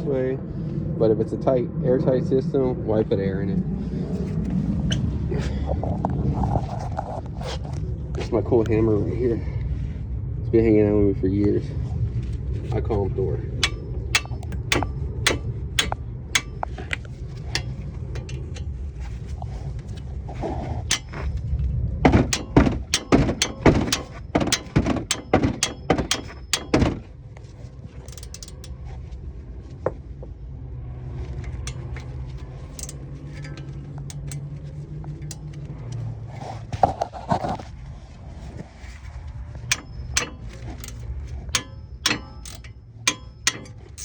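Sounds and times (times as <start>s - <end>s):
hammer striking brake assembly: 13.6s - 18.7s, 20.8s - 21.4s, 22.0s - 27.1s, 28.0s - 28.7s, 31.7s - 34.4s, 39.7s - 44.0s.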